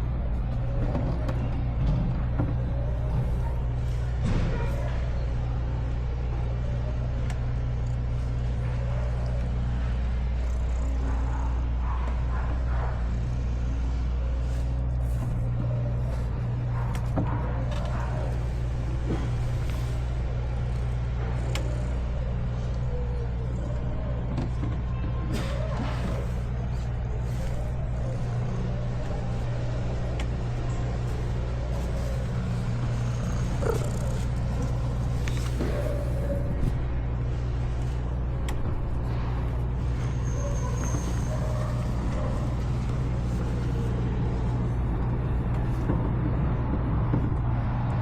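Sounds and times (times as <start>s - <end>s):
low engine drone: 0.0s - 48.0s.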